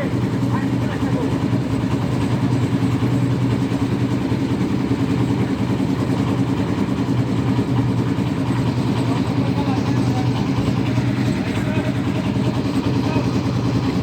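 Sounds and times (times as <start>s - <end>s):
engine running steadily: 0.0s - 14.0s.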